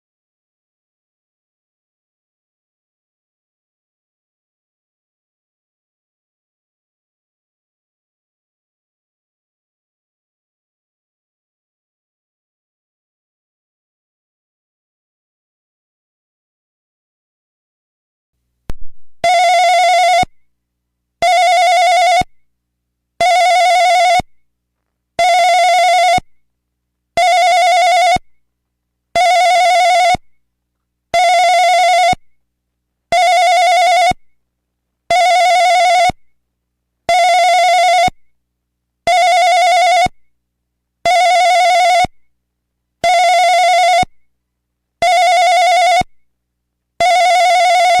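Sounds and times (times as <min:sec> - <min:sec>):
telephone ringing: 0:19.2 - 0:20.3, 0:21.2 - 0:22.3, 0:23.2 - 0:24.2, 0:25.2 - 0:26.2, 0:27.2 - 0:28.2, 0:29.2 - 0:30.2, 0:31.2 - 0:32.2, 0:33.1 - 0:34.2, 0:35.1 - 0:36.2, 0:37.1 - 0:38.1, 0:39.1 - 0:40.1, 0:41.1 - 0:42.1, 0:43.0 - 0:44.1, 0:45.0 - 0:46.1, 0:47.0 - 0:48.0.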